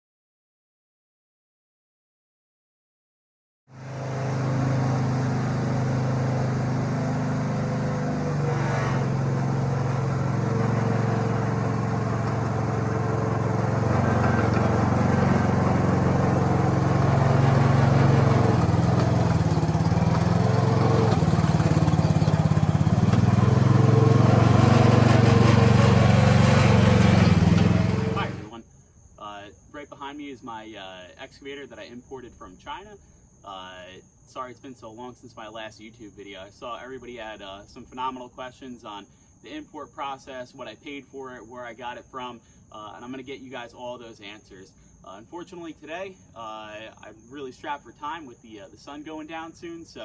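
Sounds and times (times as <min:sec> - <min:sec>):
mini excavator engine running: 0:03.8 - 0:28.6.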